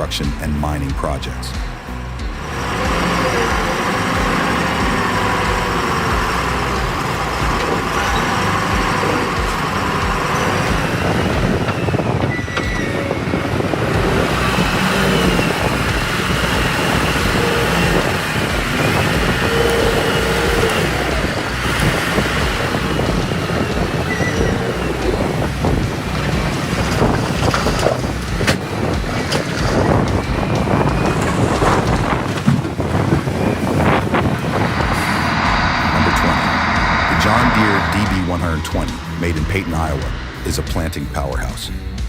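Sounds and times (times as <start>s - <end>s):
diesel engine drone: 0.0s - 42.0s
mechanical clatter: 2.2s - 40.5s.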